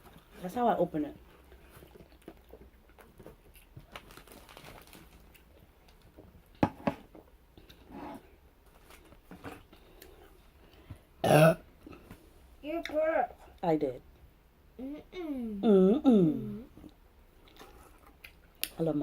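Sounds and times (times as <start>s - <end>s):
loud burp: 11.2s - 11.6s.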